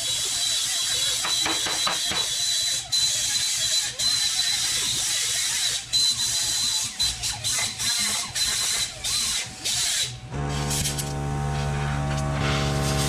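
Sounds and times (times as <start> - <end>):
plasma cutter hissing: 9.9 - 13.0.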